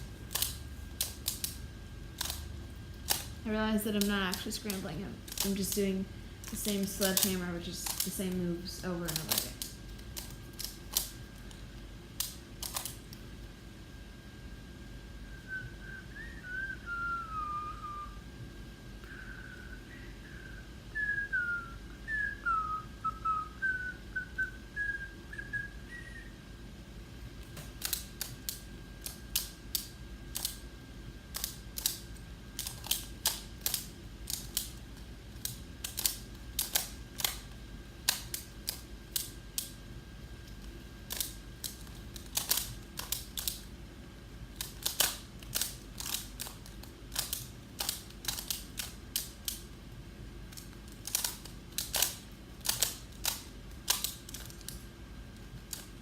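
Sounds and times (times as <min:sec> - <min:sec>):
puzzle cube clicking: 0:12.2 - 0:13.0, 0:35.4 - 0:37.4, 0:41.1 - 0:43.6, 0:44.6 - 0:49.6, 0:50.5 - 0:54.8
person whistling: 0:15.2 - 0:18.2, 0:19.0 - 0:26.4.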